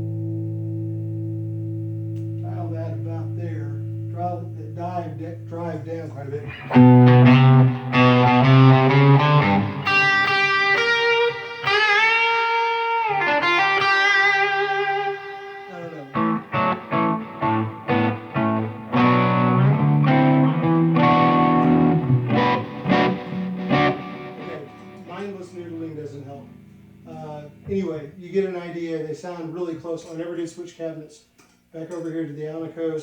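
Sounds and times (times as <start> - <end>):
overdriven electric guitar: 6.4 - 27.8.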